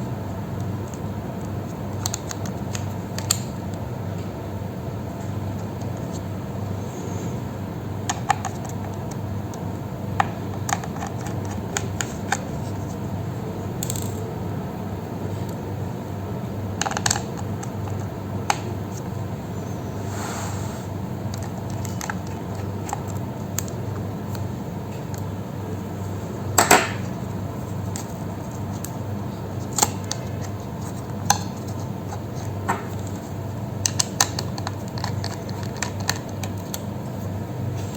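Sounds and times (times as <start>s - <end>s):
steady low hum: 0.0s - 37.9s
small tools clicking and tapping: 10.2s - 12.4s, 33.8s - 36.8s
brief scrapes: 20.0s - 20.9s.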